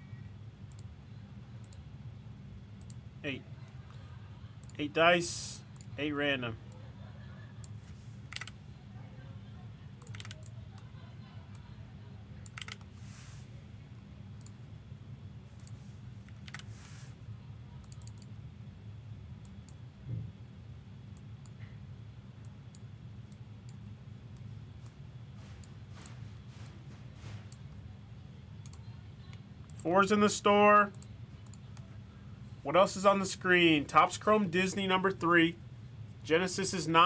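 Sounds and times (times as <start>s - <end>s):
low electrical hum: 0.0s - 37.0s
mouse and keyboard clicks: 8.3s - 8.6s, 10.0s - 10.5s, 12.4s - 12.9s, 15.6s - 16.7s.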